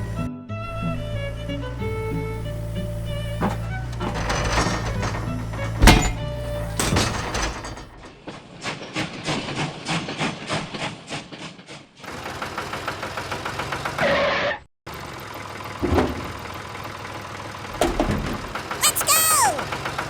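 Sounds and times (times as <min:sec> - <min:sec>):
tractor engine knocking: 0:01.0 - 0:10.6, 0:14.9 - 0:18.8, 0:19.6 - 0:20.0.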